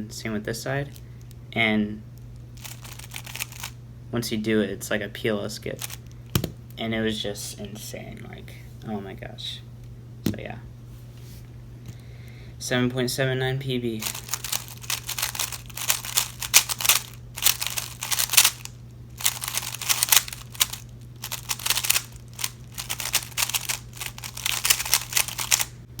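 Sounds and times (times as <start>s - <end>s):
steady low hum: 0.0s - 26.0s
plastic cube clicking: 14.0s - 25.7s.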